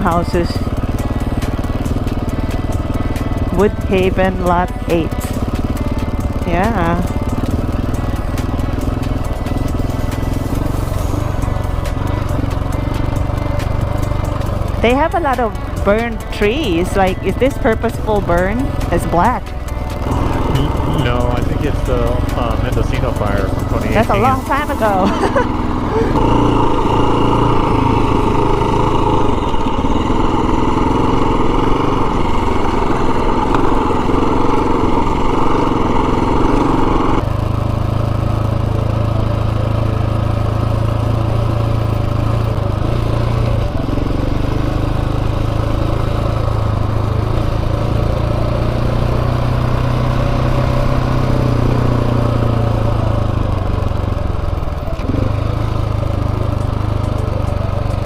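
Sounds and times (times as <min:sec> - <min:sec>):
low hum: 0:00.0 - 0:58.0
motorcycle engine running: 0:00.0 - 0:58.0
road noise: 0:00.0 - 0:58.0.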